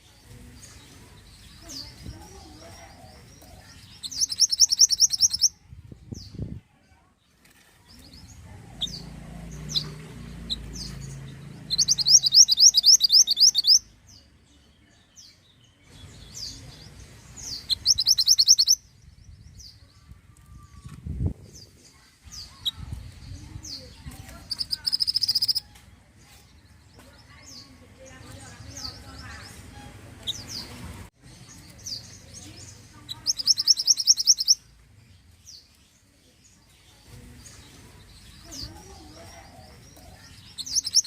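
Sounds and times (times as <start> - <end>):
bird high chirps: 0.3 - 6.6, 7.9 - 20.9, 21.5 - 34.7, 35.4 - 41.0
bird high trilling: 4.0 - 5.6, 9.6 - 13.8, 17.4 - 18.8, 24.4 - 25.7, 33.1 - 34.6, 40.5 - 41.0.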